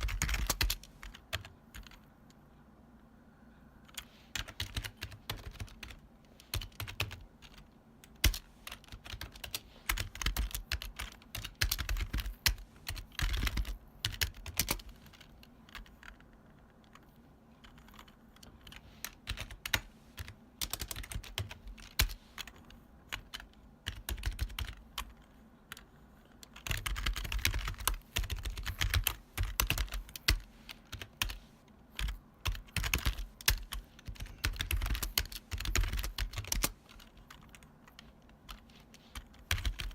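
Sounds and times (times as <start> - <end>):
clacky keyboard typing: 0.0 - 2.1, 3.8 - 39.9.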